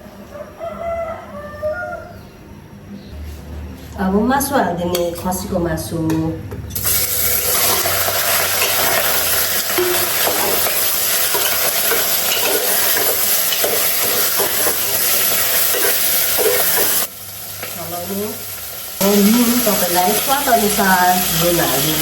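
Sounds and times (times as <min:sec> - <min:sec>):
meat sizzling in hot oil: 0:06.8 - 0:22.0.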